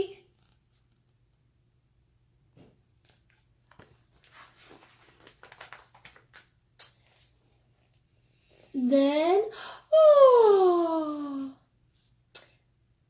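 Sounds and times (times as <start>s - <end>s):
paper pages rustling: 3.0s - 8.0s.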